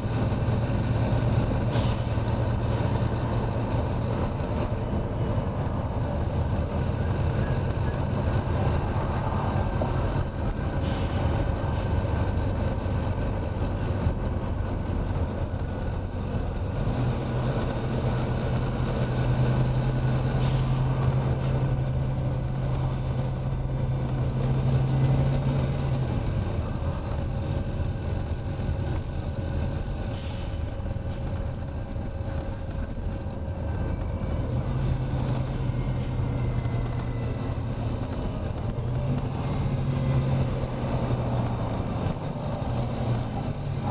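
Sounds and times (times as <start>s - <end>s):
bus diesel engine drone: 0.0s - 43.9s
short air hisses: 1.7s - 2.3s, 10.8s - 11.9s, 30.1s - 30.7s.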